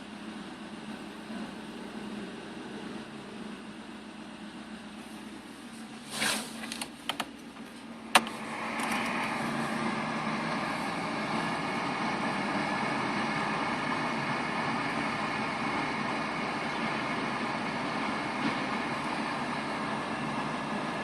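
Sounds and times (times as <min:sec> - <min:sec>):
car engine running with rattle: 0:00.0 - 0:21.0.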